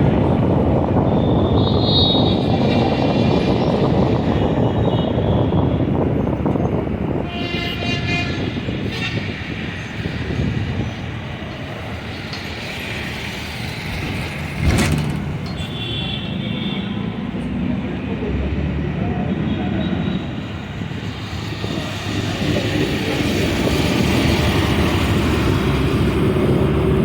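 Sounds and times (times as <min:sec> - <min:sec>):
traffic rumble: 0:00.0 - 0:27.0
car horns honking: 0:15.4 - 0:17.3.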